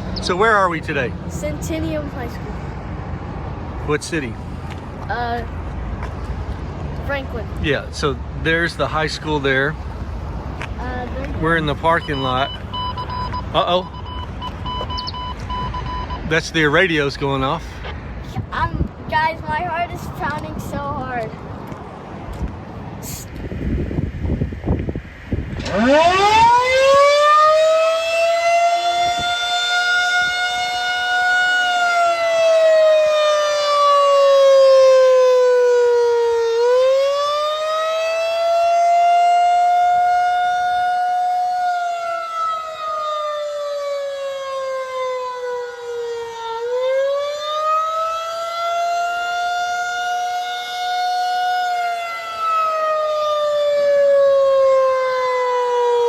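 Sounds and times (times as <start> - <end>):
warning siren wailing: 10.0 - 16.3, 25.3 - 56.0.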